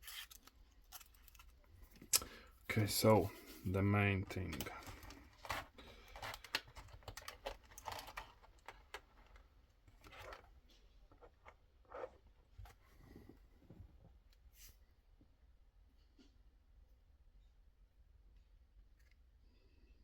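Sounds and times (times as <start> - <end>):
plastic wrapping rustling: 2.9 - 12.2
packaging clicks and taps: 4.4 - 9.4.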